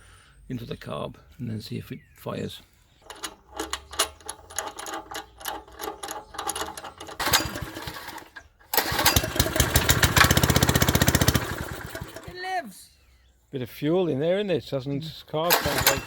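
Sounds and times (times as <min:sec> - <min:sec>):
pull-starter clicks: 0:03.0 - 0:12.4, 0:15.5 - 0:16.0
engine running loudly: 0:08.8 - 0:12.3.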